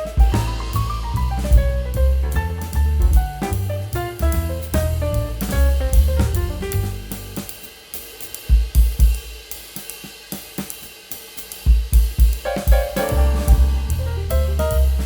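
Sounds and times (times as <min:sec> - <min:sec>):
band music with drum kit: 0:00.0 - 0:15.0
hi-hat and bass drum hits: 0:00.0 - 0:15.0.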